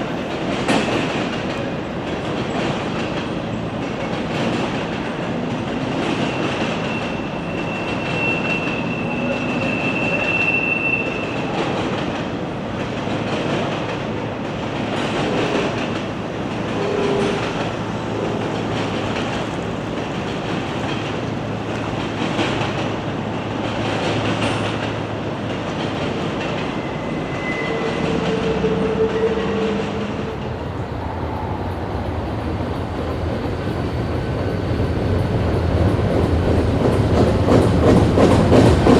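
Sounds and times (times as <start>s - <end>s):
freight train wheels clattering: 0.0s - 38.9s
train wheels squealing: 5.8s - 12.2s, 26.2s - 30.3s.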